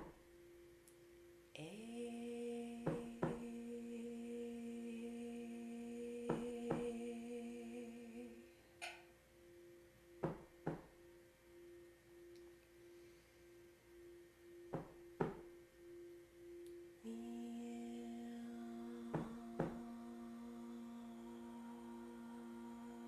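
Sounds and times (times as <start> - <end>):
tuning fork ringing: 0.0 - 23.0
tuning fork taps: 6.3 - 7.0, 8.8 - 9.1, 10.2 - 11.0, 14.7 - 15.6, 19.1 - 19.9
steady hum: 9.4 - 23.0.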